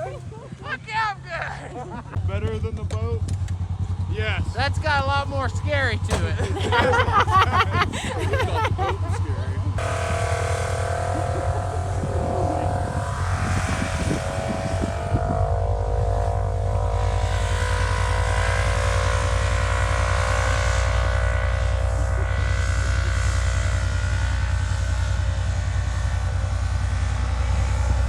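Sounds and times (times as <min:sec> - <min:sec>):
utv engine running: 0:00.0 - 0:28.0
wind buffeting microphone: 0:01.8 - 0:21.2.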